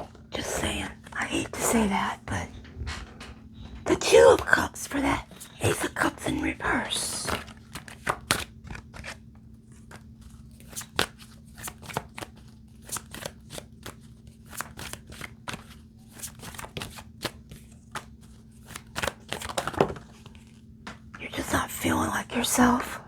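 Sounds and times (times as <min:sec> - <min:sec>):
low steady hum: 0:00.0 - 0:13.3, 0:15.5 - 0:23.0
cards being shuffled: 0:07.1 - 0:21.1.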